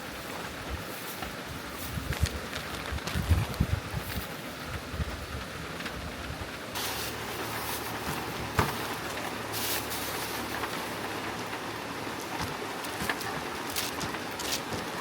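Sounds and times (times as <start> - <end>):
steady rain: 0.0 - 15.0
bright steady hiss: 6.8 - 13.0.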